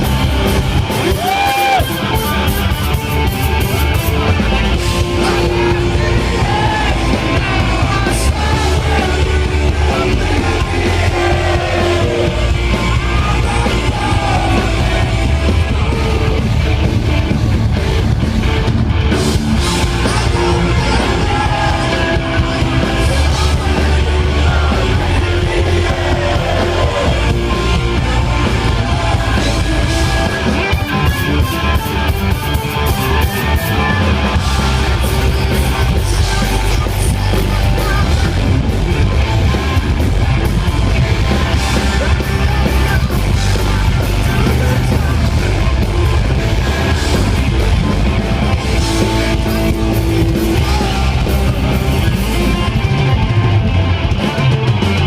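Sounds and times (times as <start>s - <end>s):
bass guitar: 0.0s - 55.0s
drums: 0.0s - 55.0s
electric guitar: 0.0s - 55.0s
person singing: 3.7s - 16.6s, 19.8s - 31.8s, 32.8s - 38.7s, 41.5s - 47.8s, 48.9s - 53.0s.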